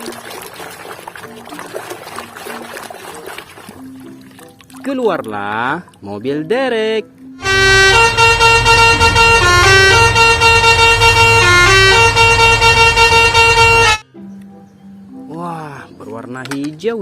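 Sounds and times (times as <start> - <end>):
low rumble: 7.4 - 14.0
musical vehicle horn: 7.4 - 14.1.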